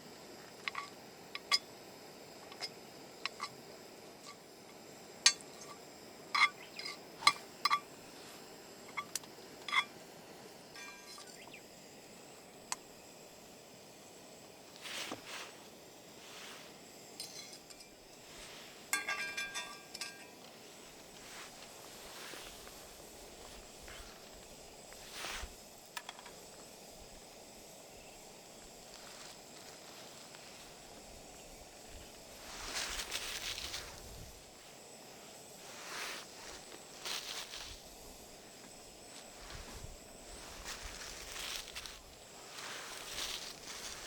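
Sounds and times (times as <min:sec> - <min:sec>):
tableware and utensils clinking: 0:18.9 - 0:20.4.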